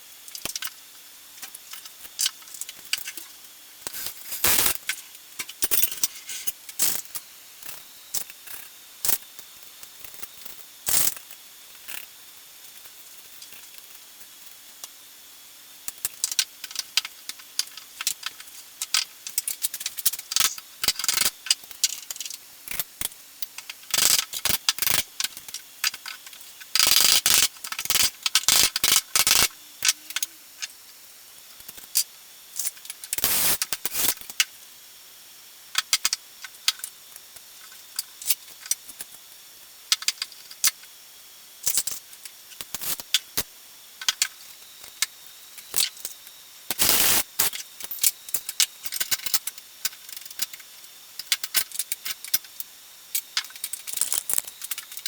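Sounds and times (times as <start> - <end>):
small metal parts clinking: 45.6 - 55.0.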